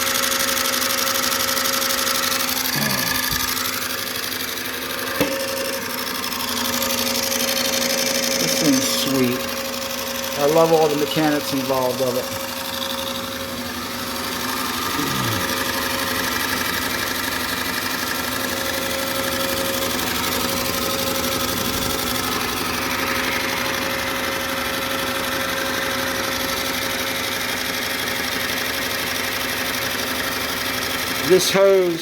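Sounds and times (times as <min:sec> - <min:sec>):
film projector clattering: 0:00.0 - 0:32.0
steady hum: 0:06.9 - 0:16.6.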